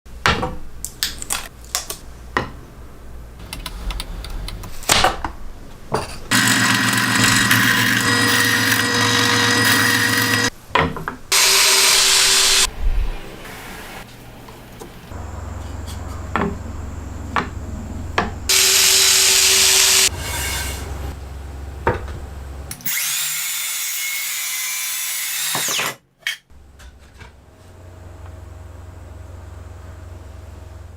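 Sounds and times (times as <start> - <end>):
power tool running: 6.3 - 10.5, 11.3 - 12.7, 18.5 - 20.1, 22.8 - 25.9.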